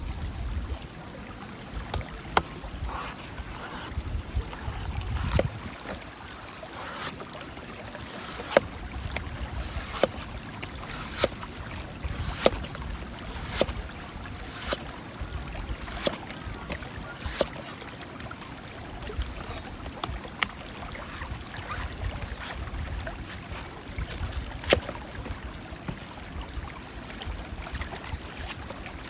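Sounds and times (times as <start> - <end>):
low wind-like rumble: 0.0 - 6.2
blade chopping coconut: 1.9 - 6.0, 6.7 - 7.3, 8.0 - 17.8, 19.3 - 25.1, 28.3 - 28.7.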